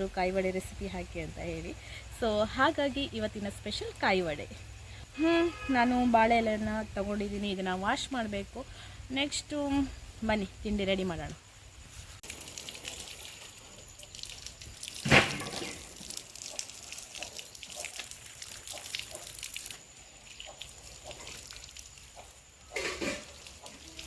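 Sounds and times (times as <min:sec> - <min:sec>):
water splashing and dripping: 0:12.2 - 0:24.0.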